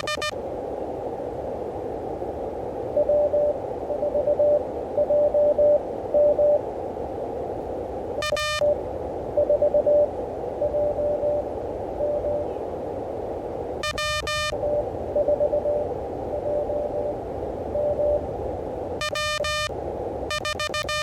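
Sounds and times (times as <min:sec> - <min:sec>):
harsh beep: 0:00.0 - 0:00.4, 0:08.2 - 0:08.8, 0:13.8 - 0:15.8, 0:19.0 - 0:19.7, 0:20.3 - 0:21.0
morse code beeps: 0:00.0 - 0:00.4, 0:03.0 - 0:06.6, 0:08.2 - 0:08.8, 0:09.4 - 0:11.4, 0:12.0 - 0:12.5, 0:13.8 - 0:17.2, 0:17.8 - 0:18.2, 0:19.0 - 0:19.7, 0:20.3 - 0:21.0
receiver hiss: 0:00.0 - 0:21.0.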